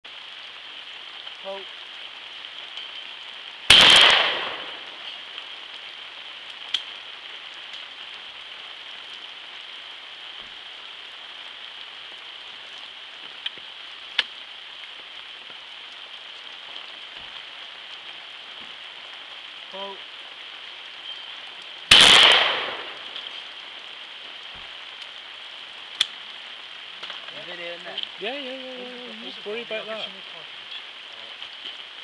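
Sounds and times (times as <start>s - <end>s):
steady hiss: 0.0s - 32.0s
shotgun shot: 3.7s - 4.8s, 21.9s - 23.0s
faint sharp clicks: 6.7s - 6.9s, 26.0s - 26.2s.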